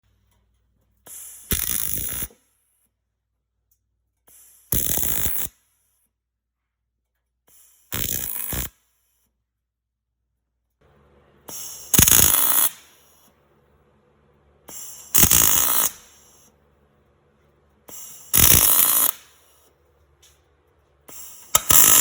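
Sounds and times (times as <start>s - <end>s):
welding arc crackling: 1.1s - 2.4s, 4.4s - 5.5s, 7.9s - 8.7s, 10.8s - 22.0s.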